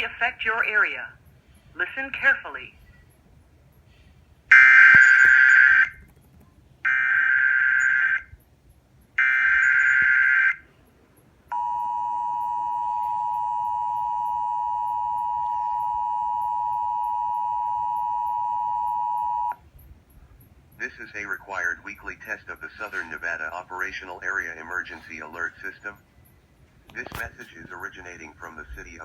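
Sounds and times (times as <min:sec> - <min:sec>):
digital data tone bursts: 0:04.5 - 0:05.9, 0:09.2 - 0:10.5
two-tone attention signal: 0:11.5 - 0:19.6.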